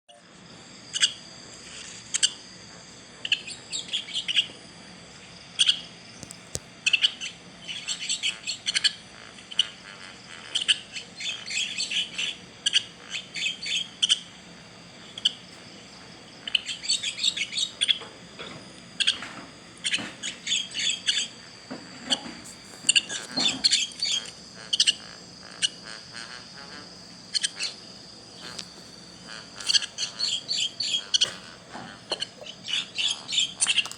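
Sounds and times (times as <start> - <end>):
baby bird chirping: 16.4 - 18.0, 19.0 - 21.4, 22.1 - 33.9.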